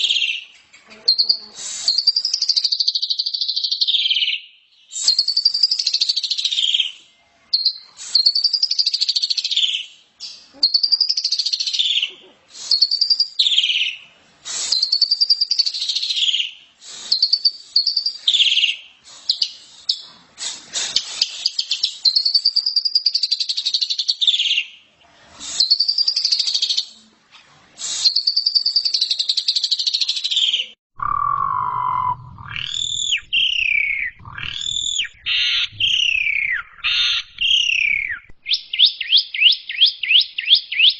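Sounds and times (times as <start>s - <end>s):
starling singing whistles and chatter: 0.0s - 24.7s, 25.4s - 27.0s, 27.8s - 40.9s
low hum: 31.0s - 37.5s.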